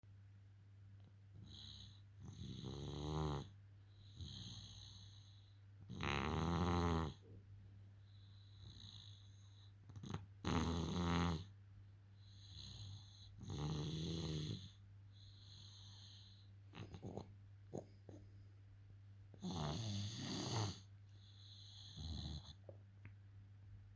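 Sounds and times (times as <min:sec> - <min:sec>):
loud snores: 0:01.4 - 0:07.3, 0:08.6 - 0:11.5, 0:12.2 - 0:17.8, 0:19.4 - 0:22.6
soft breaths: 0:03.7 - 0:05.8, 0:14.5 - 0:23.0.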